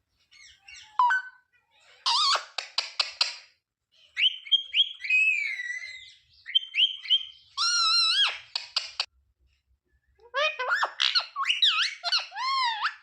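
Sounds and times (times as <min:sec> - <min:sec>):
parrot whistled chirps: 0:04.2 - 0:08.5, 0:10.6 - 0:13.0.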